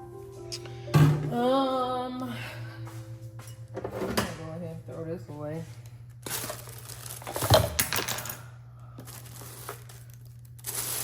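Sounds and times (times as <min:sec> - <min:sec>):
plastic trash bag rustling: 0:05.5 - 0:07.8, 0:09.0 - 0:11.0.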